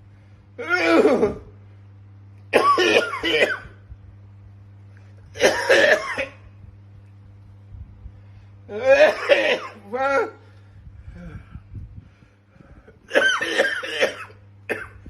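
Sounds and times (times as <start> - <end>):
man coughing: 0.6 - 1.5, 2.6 - 3.7, 5.3 - 6.4, 8.8 - 10.4, 13.1 - 15.0.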